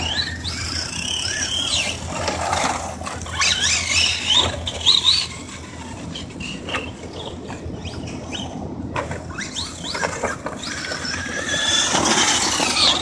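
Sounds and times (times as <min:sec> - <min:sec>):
rc car motor whining: 0:00.0 - 0:13.0
tyre and ground noise: 0:00.0 - 0:13.0.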